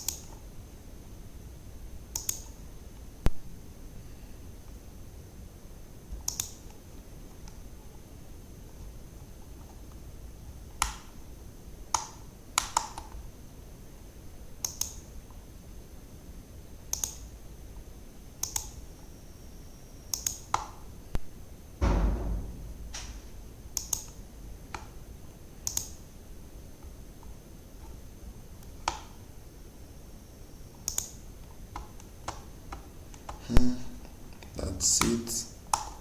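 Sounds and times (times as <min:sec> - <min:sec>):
computer mouse clicking: 0:00.0 - 0:00.4, 0:02.1 - 0:02.6, 0:06.2 - 0:06.8, 0:11.9 - 0:13.2, 0:14.6 - 0:15.0, 0:16.9 - 0:17.3, 0:18.4 - 0:18.8, 0:20.1 - 0:20.7, 0:23.8 - 0:24.9, 0:25.6 - 0:26.0, 0:30.8 - 0:33.4
faint high whine: 0:18.1 - 0:20.2
dull thump: 0:21.8 - 0:23.6.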